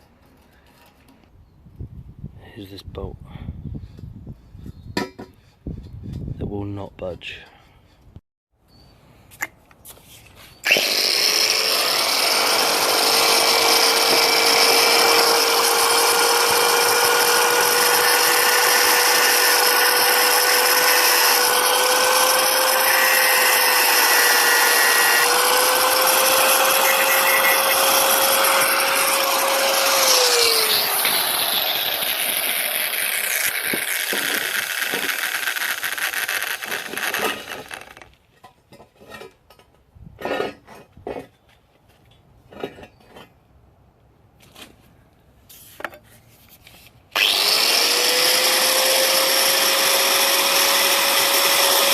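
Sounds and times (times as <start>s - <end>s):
power tool motor whine: 10.6s - 38.0s, 47.1s - 51.9s.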